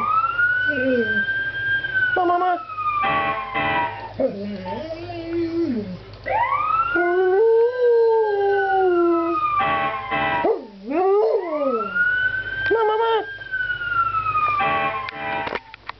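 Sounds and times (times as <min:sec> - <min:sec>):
dog howling: 0:00.0 - 0:01.3, 0:03.4 - 0:06.0, 0:06.9 - 0:13.5
fire truck siren wailing: 0:00.0 - 0:04.2, 0:06.2 - 0:15.8.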